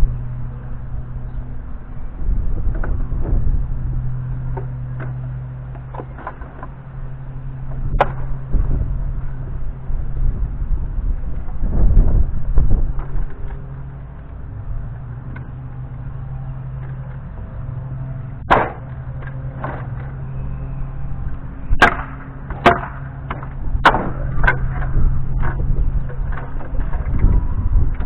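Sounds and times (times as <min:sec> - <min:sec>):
steady low hum: 0:00.0 - 0:28.0
wood knocking and cracking: 0:18.5 - 0:20.1.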